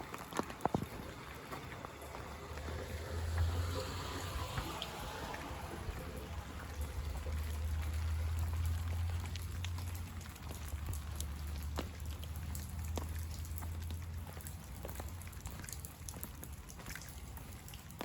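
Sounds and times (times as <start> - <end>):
rain falling: 0.0 - 18.0
sharp drips: 0.0 - 18.0
water running and splashing: 0.0 - 18.0
steady low rumble: 1.1 - 11.3.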